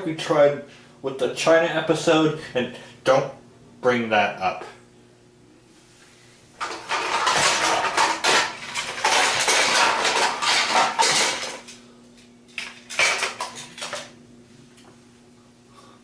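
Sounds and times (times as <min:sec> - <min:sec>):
hard objects clattering together: 0:06.6 - 0:11.8, 0:12.5 - 0:14.1.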